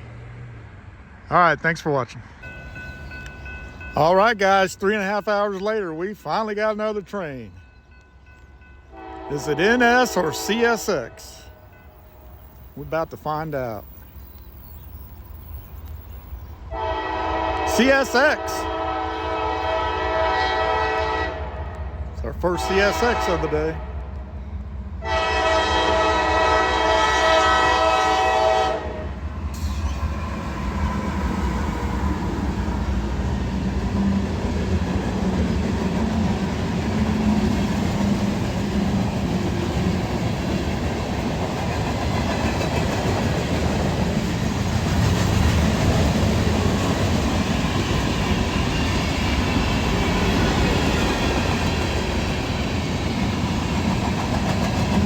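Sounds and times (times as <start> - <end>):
train wheels rumbling on rail: 2.4 - 55.0
train horn chord: 8.9 - 12.5, 16.7 - 24.2, 25.0 - 29.2.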